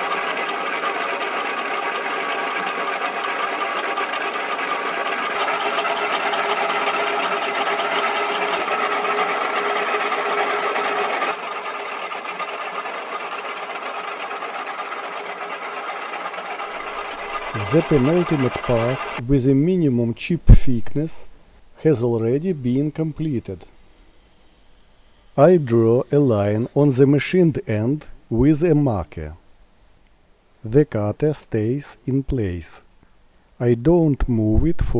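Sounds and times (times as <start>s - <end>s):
milling machine cutting: 0.0s - 14.4s, 16.7s - 19.2s, 21.8s - 27.6s.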